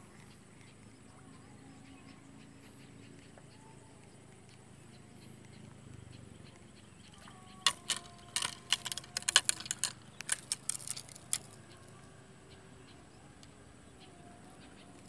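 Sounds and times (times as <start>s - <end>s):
small hard objects clicking and rattling: 7.5s - 12.0s.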